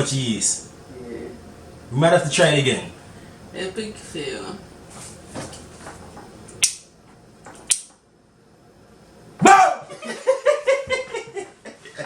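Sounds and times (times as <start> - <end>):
loud vocal exclamation: 9.4 - 9.9.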